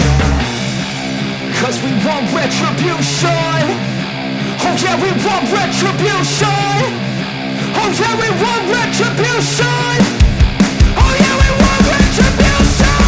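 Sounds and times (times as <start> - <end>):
hard rock music with vocals: 0.0 - 13.0.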